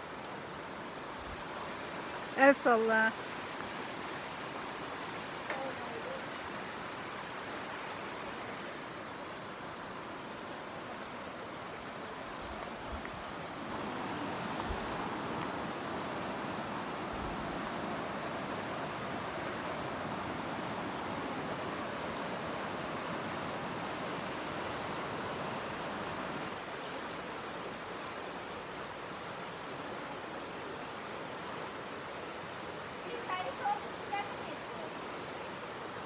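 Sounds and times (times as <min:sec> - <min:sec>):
stream rushing over rocks: 0:00.0 - 0:36.0.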